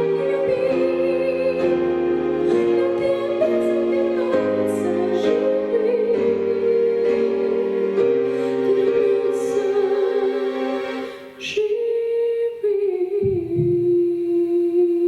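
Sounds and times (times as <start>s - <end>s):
slow ballad sustained chords: 0.0s - 11.3s.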